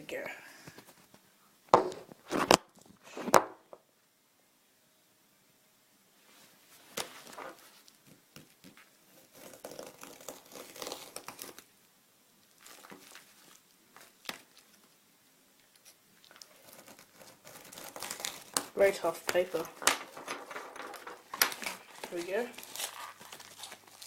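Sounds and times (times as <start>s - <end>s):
paper tearing and crinkling: 8.6s - 11.7s, 12.6s - 14.8s, 15.8s - 24.0s
paper snapping: 16.3s - 24.0s.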